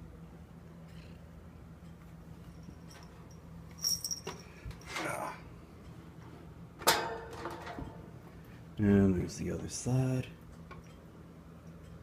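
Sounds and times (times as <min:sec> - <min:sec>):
metal fan rattling: 0:00.9 - 0:12.0.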